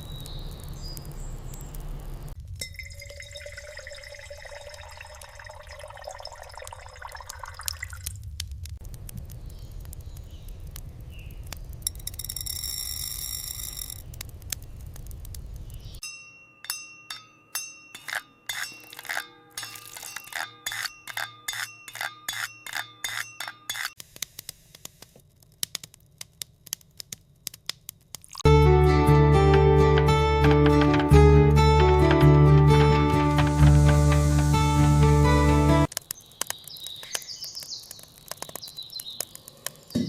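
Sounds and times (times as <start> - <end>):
light ringing clinks: 16.0 - 24.0.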